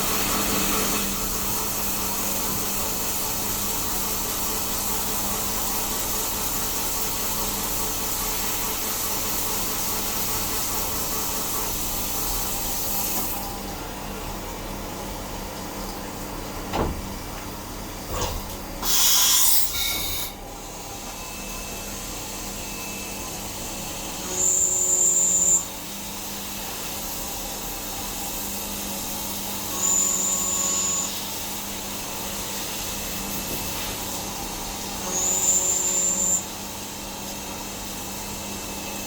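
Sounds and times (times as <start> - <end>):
loud hissing burst: 18.8 - 20.4.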